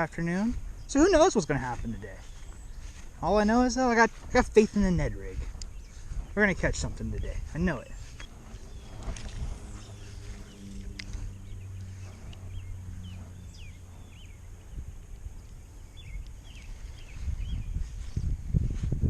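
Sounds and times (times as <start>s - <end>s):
low hum: 0.0s - 19.0s
low rumbling thumps: 0.0s - 19.0s
small birds chirping: 0.0s - 19.0s.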